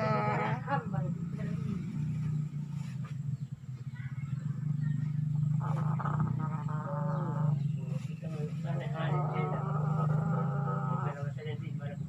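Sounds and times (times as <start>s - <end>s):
chicken snoring: 5.2s - 7.9s, 8.9s - 11.4s.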